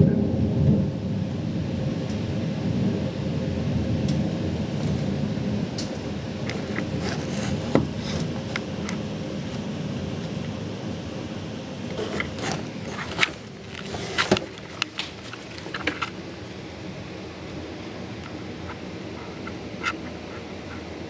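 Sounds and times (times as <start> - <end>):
low rumble: 0.0 - 8.9
rain: 0.0 - 21.0.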